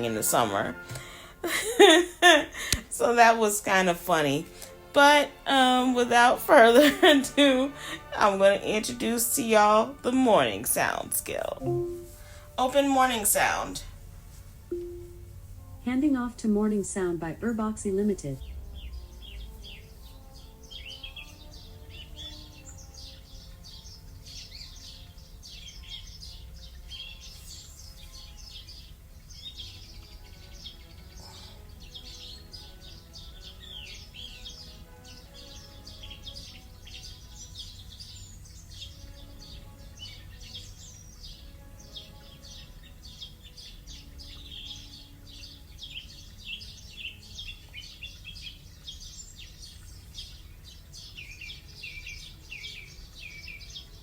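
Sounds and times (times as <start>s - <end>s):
birds chirping and trilling: 0.0s - 14.1s, 14.7s - 54.0s
faint low hum: 11.4s - 20.9s.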